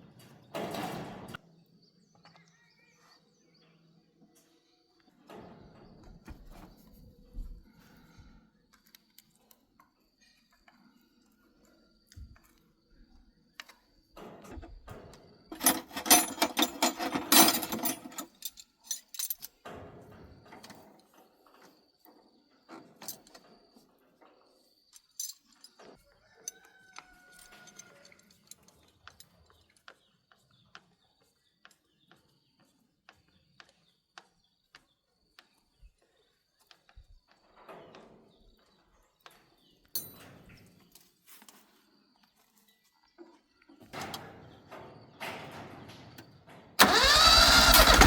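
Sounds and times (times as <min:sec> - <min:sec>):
metal tools clinking and rattling: 0:15.5 - 0:19.7, 0:25.0 - 0:26.6, 0:27.3 - 0:29.3, 0:39.9 - 0:41.1, 0:45.2 - 0:48.0.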